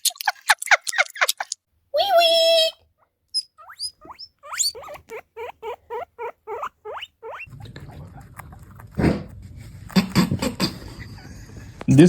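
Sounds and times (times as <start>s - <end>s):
guinea pig squeaking: 3.3s - 11.2s
thud: 8.9s - 10.6s.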